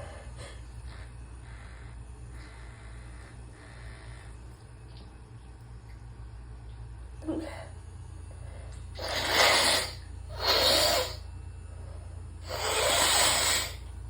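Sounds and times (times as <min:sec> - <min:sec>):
person blowing air through nose: 0:09.0 - 0:11.2, 0:12.4 - 0:13.8.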